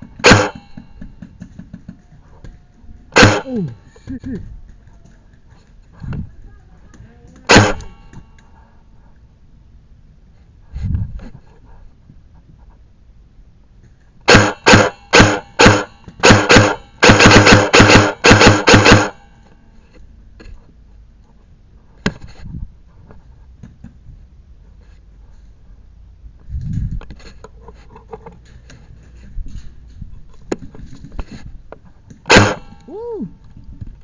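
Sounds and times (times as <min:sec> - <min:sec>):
airsoft rifle rapid shots: 0:00.0 - 0:00.8, 0:03.2 - 0:03.7, 0:07.5 - 0:08.0, 0:14.3 - 0:19.2, 0:32.3 - 0:32.8
sharp click: 0:07.5 - 0:08.5.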